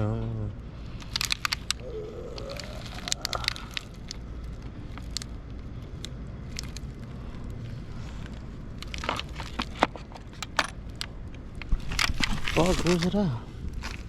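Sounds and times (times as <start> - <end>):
low hum: 0.0 - 14.0
metal sockets clicking: 8.9 - 11.1.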